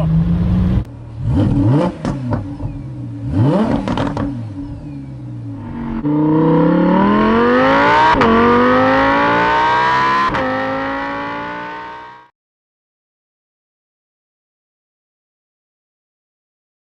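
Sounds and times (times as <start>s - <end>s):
car engine revving: 0.0s - 12.3s.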